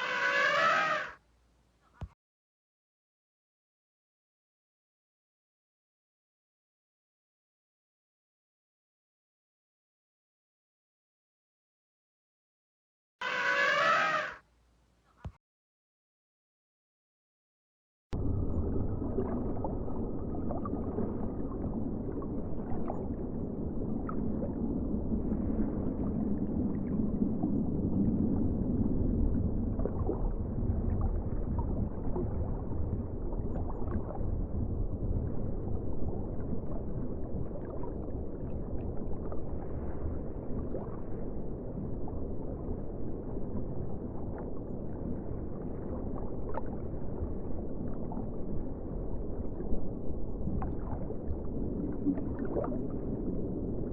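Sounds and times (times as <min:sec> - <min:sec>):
muffled water noise: 0:00.0 - 0:02.2, 0:18.1 - 0:53.9
low rumble: 0:18.2 - 0:53.9.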